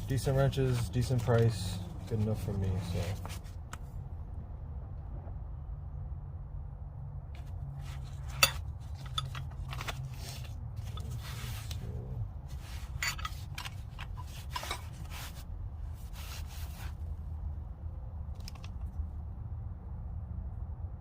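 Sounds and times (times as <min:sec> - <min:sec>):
wrenches clinking and scraping: 0:00.0 - 0:03.4, 0:07.4 - 0:11.9, 0:12.5 - 0:15.4
steady low hum: 0:00.0 - 0:21.0.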